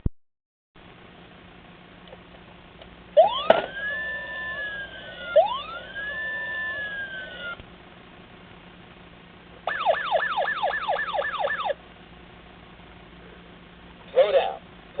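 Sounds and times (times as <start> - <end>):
toy siren wailing: 3.2 - 7.6, 9.7 - 11.8.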